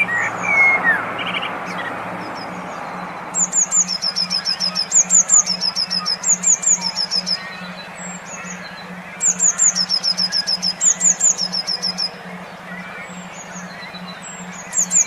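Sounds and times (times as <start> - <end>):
pulsing low hum: 0.0 - 15.0
songbird chirping: 0.0 - 15.0.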